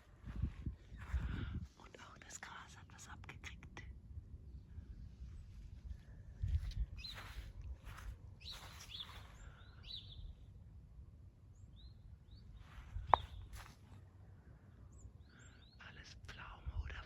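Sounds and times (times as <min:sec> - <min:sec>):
small birds chirping: 0:06.4 - 0:10.6, 0:11.5 - 0:17.0.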